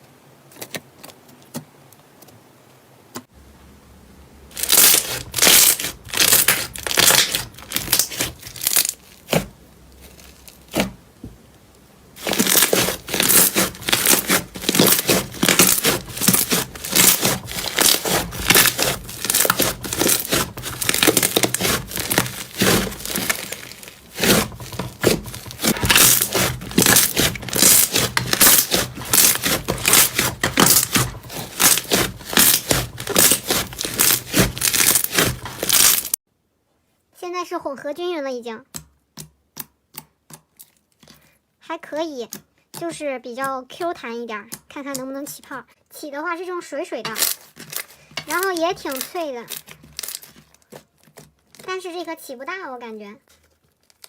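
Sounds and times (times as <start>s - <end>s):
slime squeezed by hand crackling: 4.5s - 11.0s, 12.2s - 36.2s, 47.1s - 51.8s.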